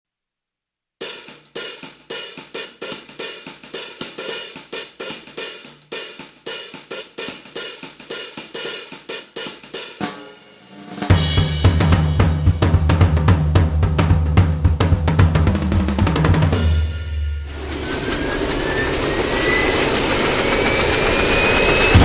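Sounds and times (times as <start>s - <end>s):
cymbal and hi-hat rhythm: 1.0s - 18.6s.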